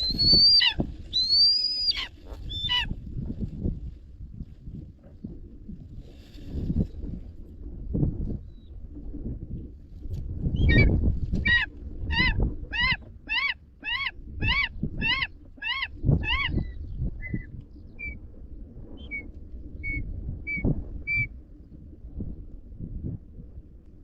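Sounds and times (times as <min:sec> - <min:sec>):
eagle calling: 0:00.0 - 0:03.0, 0:10.6 - 0:18.2, 0:19.0 - 0:21.3
low wind rumble: 0:00.0 - 0:24.0.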